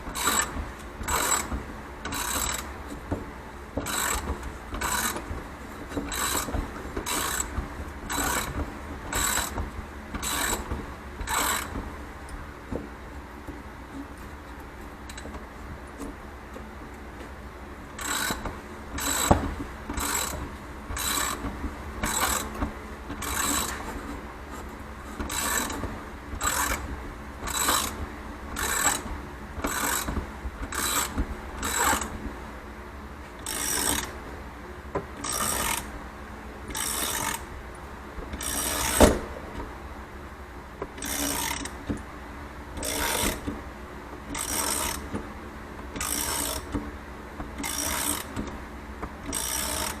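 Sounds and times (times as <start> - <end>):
ratchet wrench clicking: 18.0 - 18.4, 21.0 - 21.4, 33.4 - 34.1, 47.6 - 48.3, 49.3 - 50.0.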